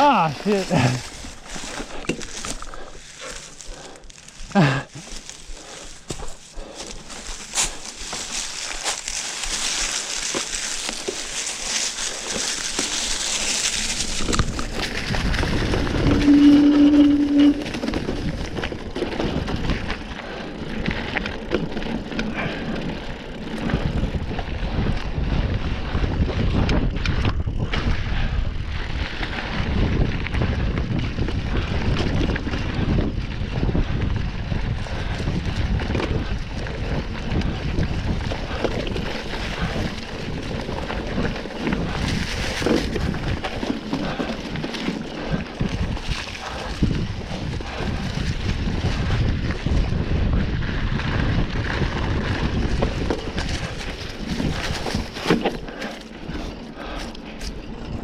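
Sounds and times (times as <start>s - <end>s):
bike rattling over bumps: 0.0s - 58.0s
wind rushing over microphone: 12.2s - 58.0s.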